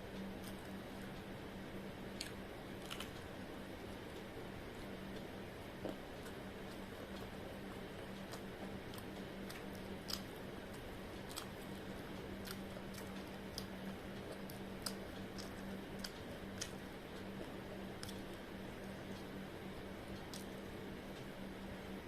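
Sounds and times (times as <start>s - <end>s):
faint steady hum: 0.0s - 22.0s
person chewing with mouth clicks: 5.7s - 19.3s.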